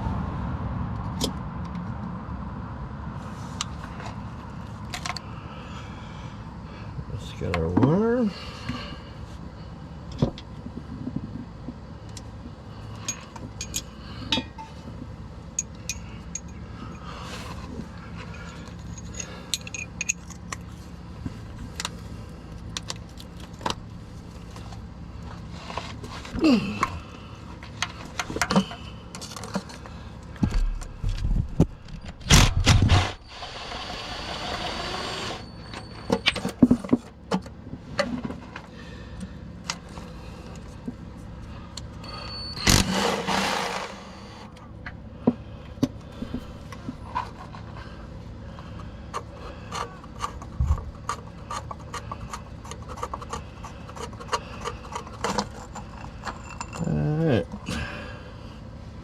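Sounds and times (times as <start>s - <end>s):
metal tools clinking: 12.9s - 14.8s, 18.1s - 20.6s, 54.0s - 57.6s.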